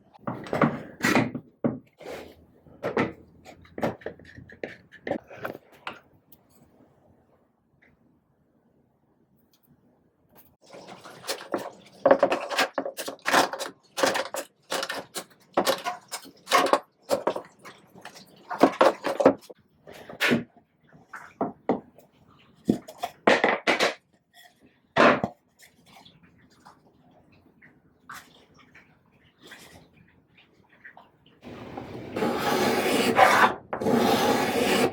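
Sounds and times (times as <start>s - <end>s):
irregular scraping strokes: 31.4s - 34.9s.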